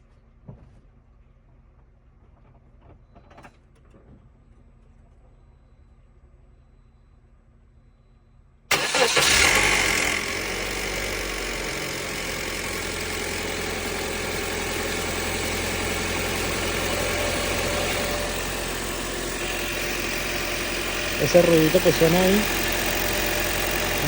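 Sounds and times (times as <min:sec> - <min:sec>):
car engine idling: 0:08.7 - 0:24.0
car engine starting and revving: 0:08.7 - 0:24.0.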